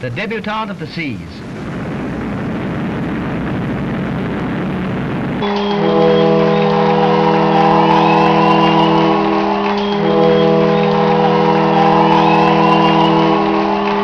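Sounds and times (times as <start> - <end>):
ship's horn chord: 5.4 - 14.0.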